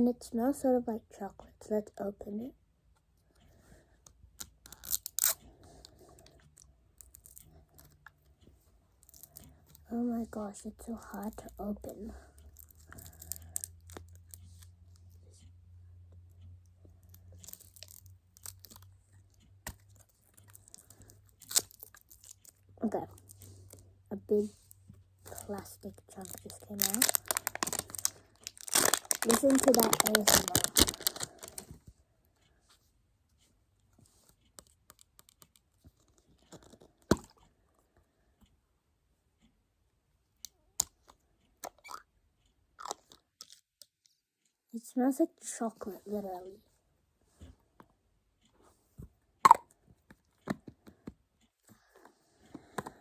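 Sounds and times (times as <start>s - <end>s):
plastic packaging torn open: 4.6s - 5.4s, 26.2s - 31.6s.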